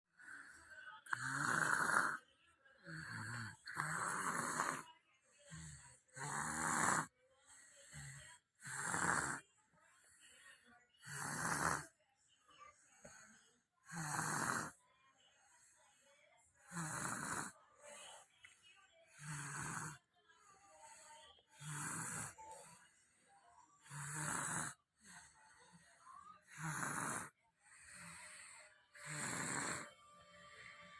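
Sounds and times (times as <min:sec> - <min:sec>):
faint breaths: 0:00.1 - 0:30.9
child snoring: 0:01.1 - 0:02.2, 0:02.9 - 0:04.8, 0:05.6 - 0:07.1, 0:07.9 - 0:09.4, 0:11.0 - 0:11.9, 0:13.9 - 0:14.8, 0:16.6 - 0:17.6, 0:19.1 - 0:20.0, 0:21.6 - 0:22.7, 0:23.8 - 0:25.2, 0:26.4 - 0:30.0.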